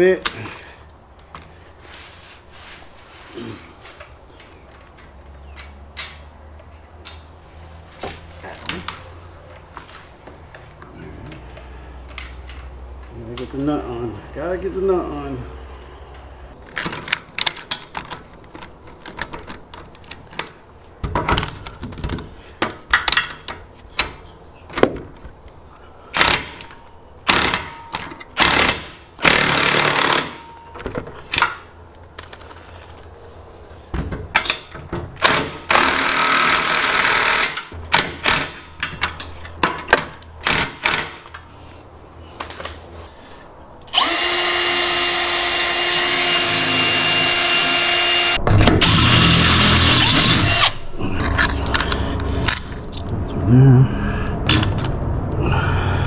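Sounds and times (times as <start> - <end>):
power tool running: 35.7 - 37.7, 43.9 - 50.8.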